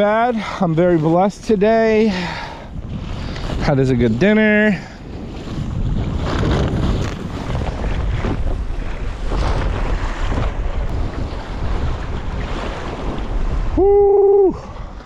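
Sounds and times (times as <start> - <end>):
water splashing around kayak: 0.0 - 15.0
wind buffeting microphone: 0.0 - 15.0.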